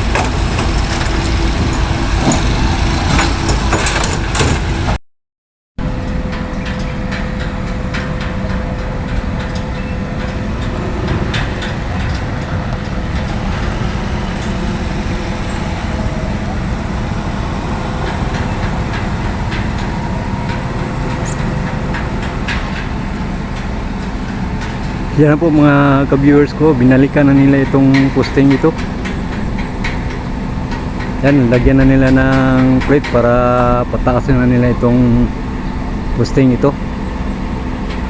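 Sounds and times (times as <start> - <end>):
heavy construction machinery running: 0.0 - 5.0, 5.8 - 38.0
steady whine: 0.0 - 5.0, 5.8 - 28.2
metal clicks and clanks: 3.1 - 4.8.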